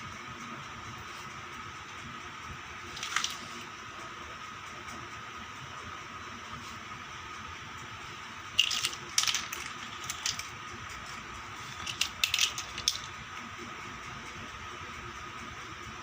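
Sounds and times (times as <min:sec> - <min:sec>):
plastic packaging rustling: 0:02.9 - 0:03.6, 0:08.6 - 0:10.5, 0:11.6 - 0:13.1.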